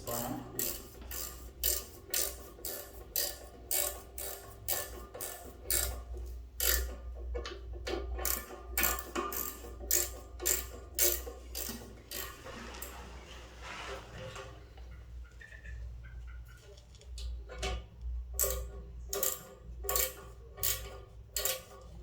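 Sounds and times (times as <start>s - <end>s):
ratchet spanner clicking: 0.1s - 12.4s, 18.3s - 21.9s.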